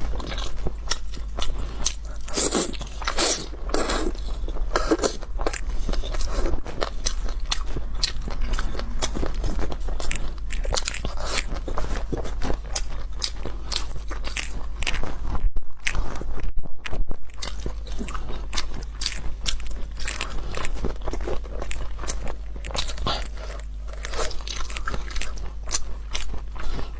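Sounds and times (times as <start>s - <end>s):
crunching crisp food: 0.0s - 26.9s
steady low hum: 0.0s - 26.9s.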